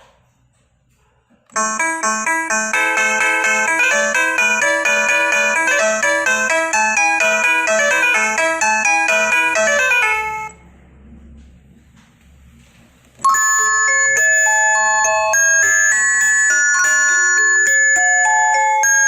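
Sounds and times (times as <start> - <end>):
electronic doorbell chime tune: 1.6 - 10.6, 13.2 - 19.0.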